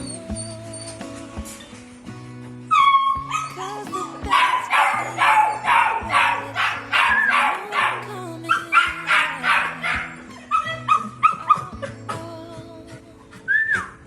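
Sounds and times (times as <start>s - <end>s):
background music: 0.0s - 14.0s
dog barking rapidly: 4.3s - 8.0s, 8.7s - 11.4s.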